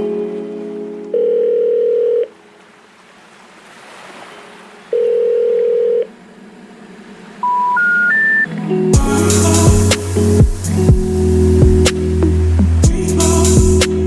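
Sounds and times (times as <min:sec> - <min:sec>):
long held synth notes: 0:06.1 - 0:14.0.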